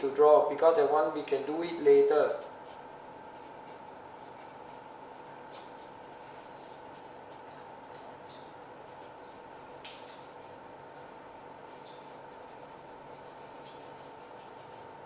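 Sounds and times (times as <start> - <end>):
faint steady hum: 0.0 - 15.0
pencil scratching on paper: 5.8 - 7.4, 8.4 - 14.9.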